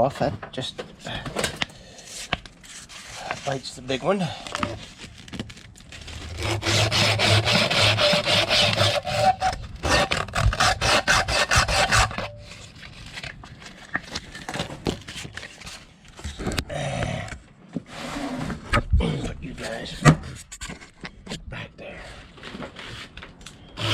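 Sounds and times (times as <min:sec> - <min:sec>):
scraping and handling: 0:00.2 - 0:10.3, 0:11.9 - 0:16.7.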